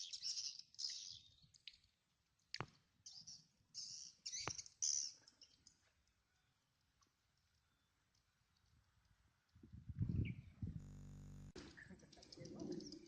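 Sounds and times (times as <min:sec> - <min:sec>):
faint high bird chirps: 0:00.0 - 0:01.6, 0:03.0 - 0:05.8, 0:10.1 - 0:13.0.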